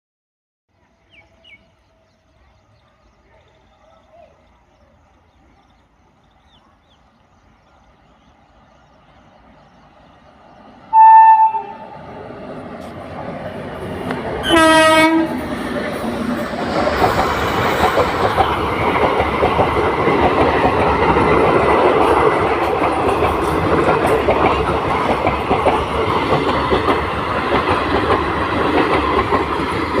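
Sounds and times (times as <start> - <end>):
train rumbling past: 1.0 - 30.0
train horn blasts: 10.9 - 11.9, 14.4 - 15.4
wheels clattering on rails: 12.5 - 30.0.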